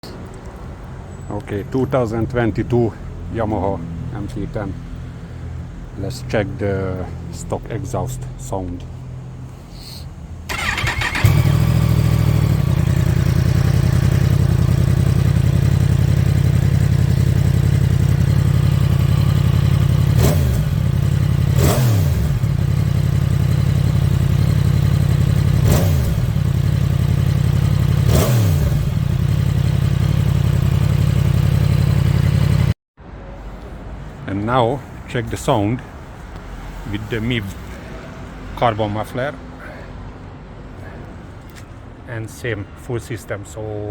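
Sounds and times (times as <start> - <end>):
motorcycle engine idling and revving: 10.5 - 32.8.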